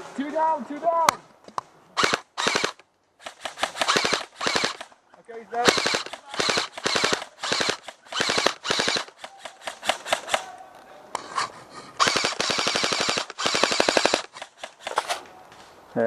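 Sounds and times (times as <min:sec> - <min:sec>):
airsoft guns firing bursts: 0:02.0 - 0:04.9, 0:05.6 - 0:10.5, 0:12.0 - 0:15.2.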